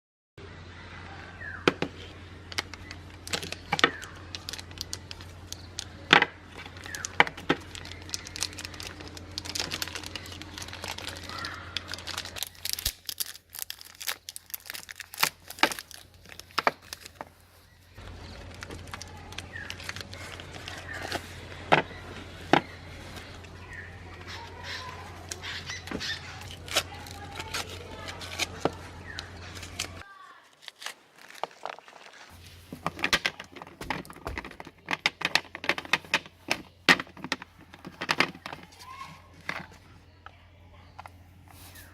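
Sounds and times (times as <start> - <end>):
soap crackling in a grinder: 2.0 - 40.3
grinder low hum: 15.9 - 30.0.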